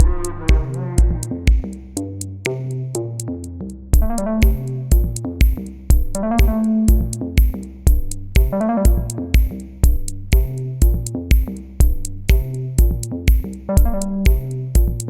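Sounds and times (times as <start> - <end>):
synthesizer and keyboard notes: 0.0 - 1.6, 4.0 - 11.1, 13.6 - 15.0
kick drum beating: 0.0 - 1.7, 4.0 - 15.0.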